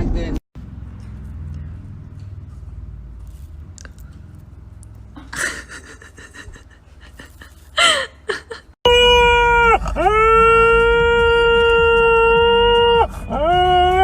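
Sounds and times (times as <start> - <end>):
dog whimpering and yelping: 9.0 - 14.0.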